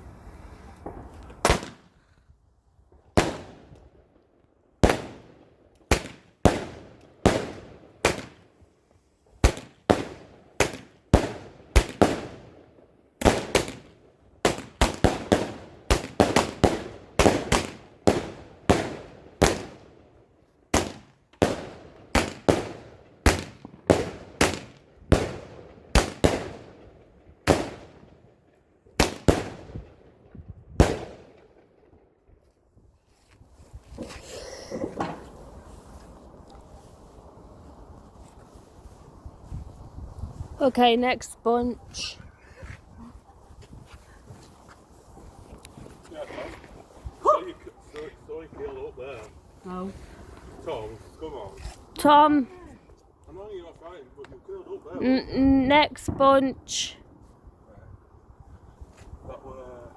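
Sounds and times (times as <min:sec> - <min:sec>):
fireworks bangs: 0:00.7 - 0:02.0, 0:04.8 - 0:08.6, 0:09.4 - 0:12.6, 0:13.2 - 0:19.9, 0:20.8 - 0:28.2, 0:29.0 - 0:31.8, 0:55.7 - 0:57.0.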